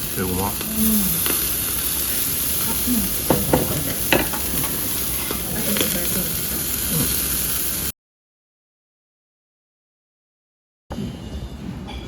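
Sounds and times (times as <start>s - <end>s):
food sizzling: 0.0s - 7.9s.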